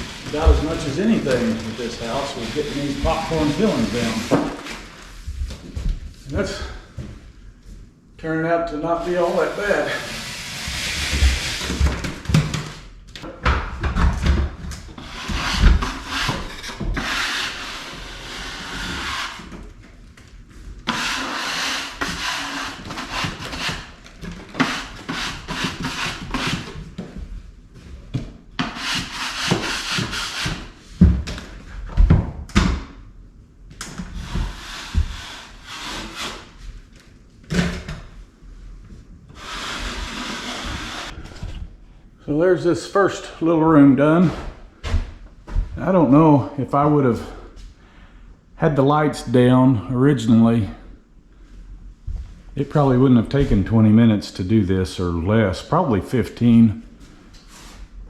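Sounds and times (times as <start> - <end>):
scraper stripping ceiling texture: 0.0 - 5.3, 8.8 - 12.9, 14.2 - 19.8, 20.8 - 27.0, 28.6 - 31.1, 34.0 - 36.8, 39.3 - 41.3.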